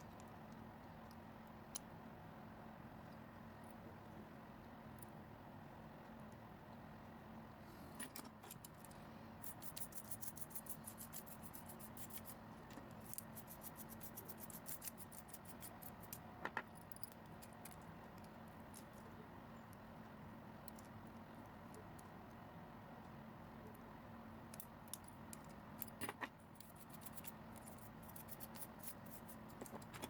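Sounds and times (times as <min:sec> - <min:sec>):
small hard parts clicking: 0:08.0 - 0:19.2.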